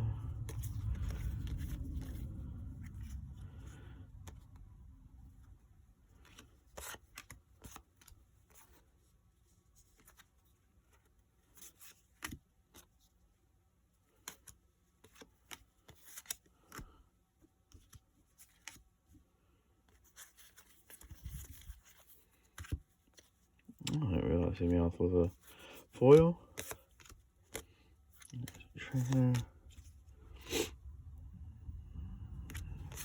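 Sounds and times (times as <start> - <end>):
trading cards rustling and clicking: 0.1 - 13.2, 13.9 - 31.3, 32.1 - 33.0.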